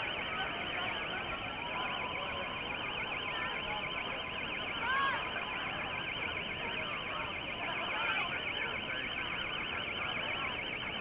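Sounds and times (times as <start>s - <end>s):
crowd chatter: 0.0s - 11.0s.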